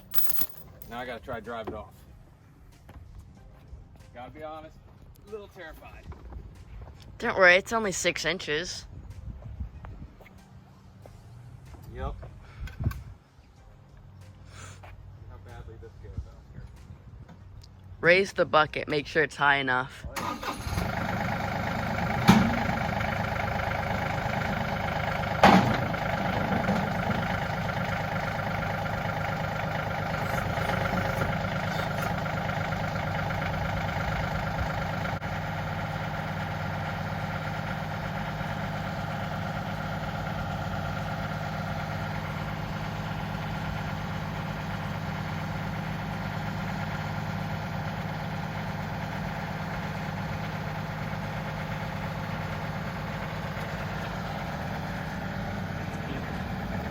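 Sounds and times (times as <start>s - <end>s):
tractor diesel engine running: 0.0s - 1.0s, 20.1s - 56.9s.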